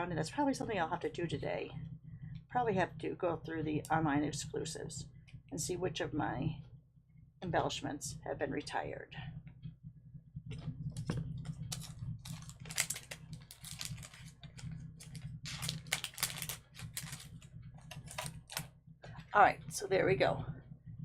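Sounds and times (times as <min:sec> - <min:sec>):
steady low hum: 0:00.0 - 0:21.0
paper rustling: 0:11.0 - 0:18.6
foil gems peeled off sheet: 0:11.7 - 0:18.6.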